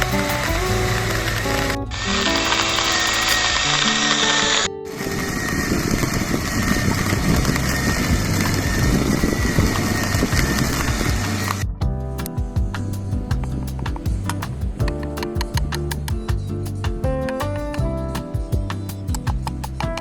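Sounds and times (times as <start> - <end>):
background music with bass line: 0.0 - 3.9, 6.0 - 20.0
steady hiss: 0.0 - 4.4.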